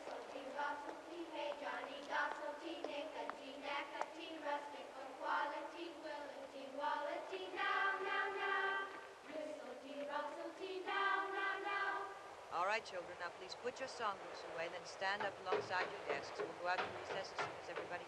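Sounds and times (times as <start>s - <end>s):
woman singing: 0.0s - 12.3s
children singing in unison: 0.0s - 12.5s.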